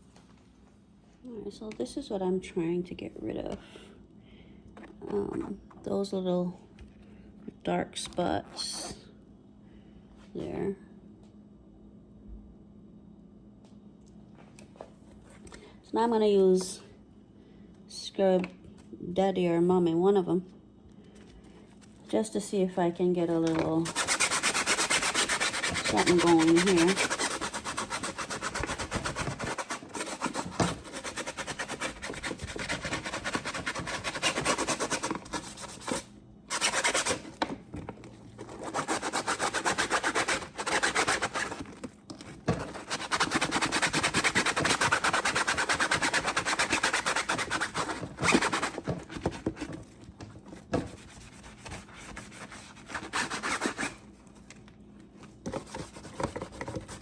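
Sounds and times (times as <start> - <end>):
sponge scrubbing mesh filter: 23.4 - 37.3, 38.4 - 41.8, 42.4 - 49.8.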